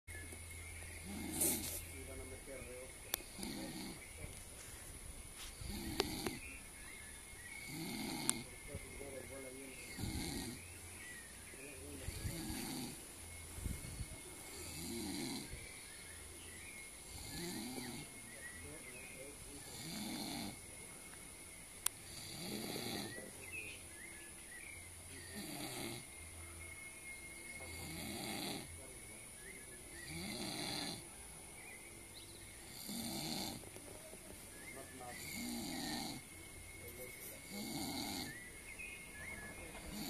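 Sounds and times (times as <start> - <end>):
loud rhythmic snoring: 0.8 - 4.4, 5.4 - 21.0, 21.8 - 23.7, 24.6 - 26.4, 27.4 - 40.0
person snoring: 1.0 - 2.0, 3.2 - 4.2, 5.5 - 6.5, 7.5 - 8.6, 9.7 - 10.7, 12.0 - 13.0, 13.9 - 15.7, 17.0 - 18.2, 19.6 - 20.6, 22.1 - 23.2, 25.2 - 26.1, 27.6 - 28.7, 30.0 - 31.1, 32.6 - 33.6, 35.1 - 36.2, 37.4 - 38.4, 39.8 - 40.0.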